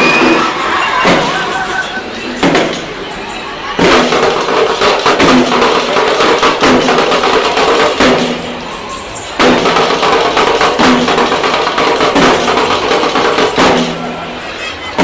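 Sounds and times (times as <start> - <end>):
frame drums played fast: 3.8 - 8.6, 9.4 - 14.2.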